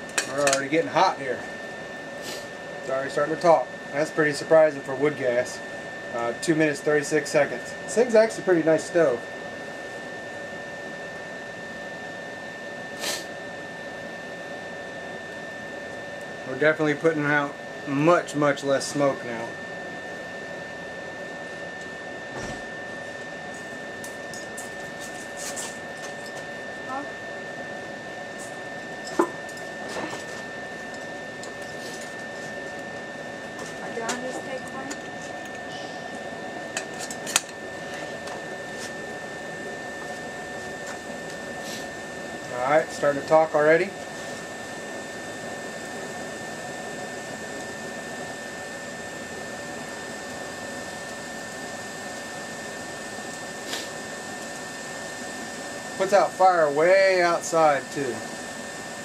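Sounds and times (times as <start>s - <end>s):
camp stove fan whining: 0.0s - 59.0s
kettle ticking and sizzling: 39.2s - 58.0s.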